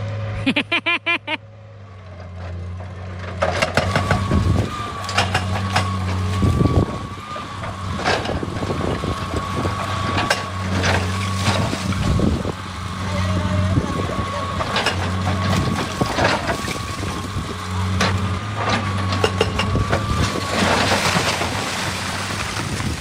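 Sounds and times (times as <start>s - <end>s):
excavator engine whine: 0.0s - 23.0s
rock clattering: 19.1s - 23.0s.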